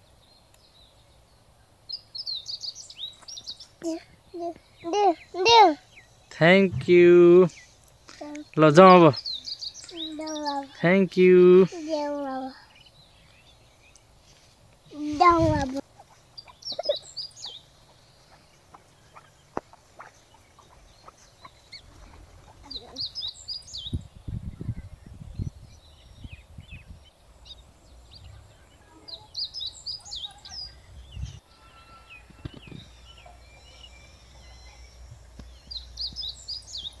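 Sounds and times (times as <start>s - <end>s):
bird singing: 0.0s - 14.2s, 14.8s - 37.0s
faint bird calls: 14.9s - 24.0s.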